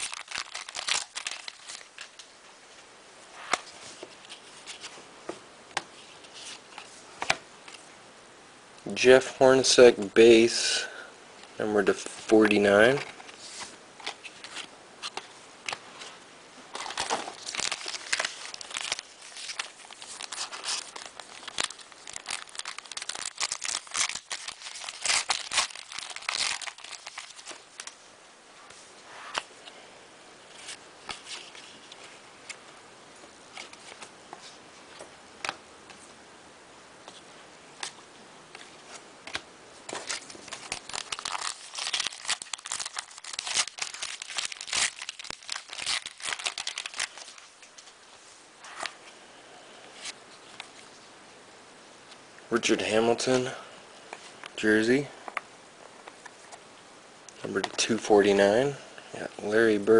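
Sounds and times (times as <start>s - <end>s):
cardboard cards rustling: 0.0s - 2.3s, 11.9s - 28.0s, 37.8s - 48.0s
foil wrapper crinkling: 0.0s - 2.3s, 16.7s - 28.0s, 39.3s - 47.9s.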